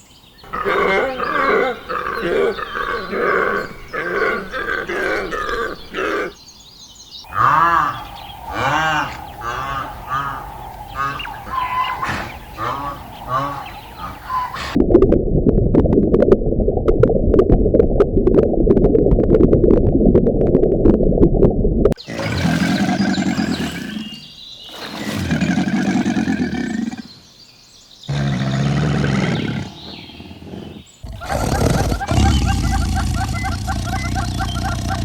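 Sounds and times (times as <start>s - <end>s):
big cat growling: 0.5s - 6.4s, 7.3s - 14.8s, 28.1s - 35.0s
big cat roaring: 0.5s - 6.4s, 7.3s - 14.8s, 28.1s - 35.0s.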